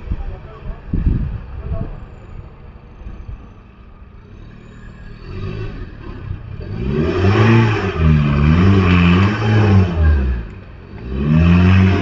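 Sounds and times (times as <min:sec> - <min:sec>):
engine revving hard: 0:04.3 - 0:12.0.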